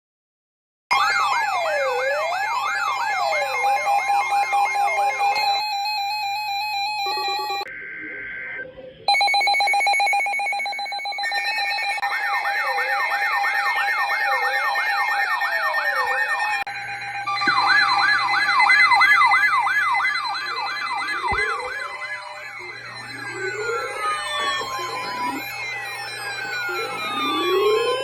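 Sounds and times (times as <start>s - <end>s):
rising and falling electronic wail: 0.9s - 9.0s, 11.8s - 28.0s
steady high electronic tone: 1.0s - 28.0s.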